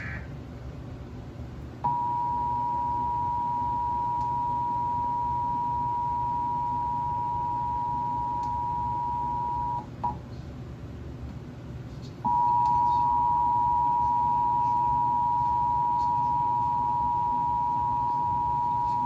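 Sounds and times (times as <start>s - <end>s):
faint hum: 0.0s - 19.0s
two-tone alert signal: 1.8s - 10.2s, 12.2s - 19.0s.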